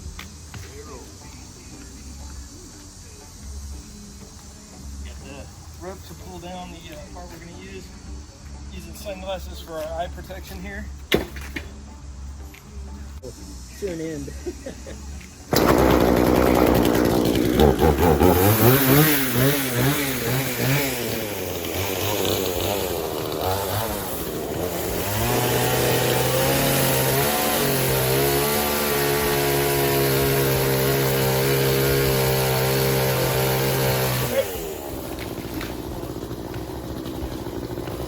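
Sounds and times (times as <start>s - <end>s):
chainsaw engine revving: 15.5s - 38.0s.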